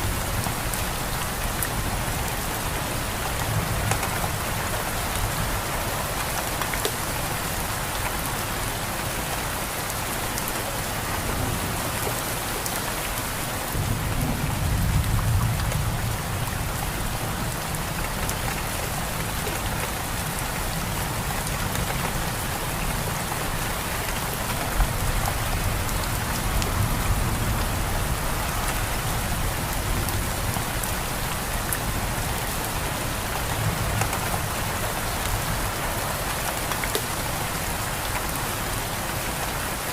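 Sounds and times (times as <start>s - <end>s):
steady rainfall: 0.0s - 39.9s
low rumble of thunder: 13.6s - 17.7s.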